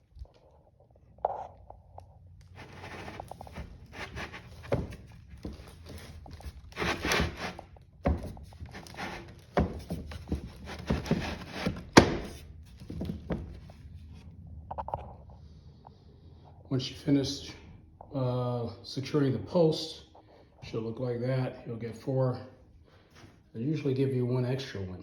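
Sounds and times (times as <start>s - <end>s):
wooden panels scraping: 2.6s - 13.7s.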